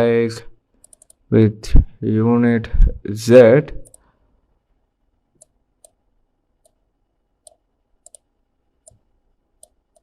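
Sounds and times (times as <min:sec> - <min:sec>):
computer mouse clicks: 0:00.8 - 0:01.2, 0:03.8 - 0:04.1, 0:05.4 - 0:06.0, 0:07.4 - 0:10.0.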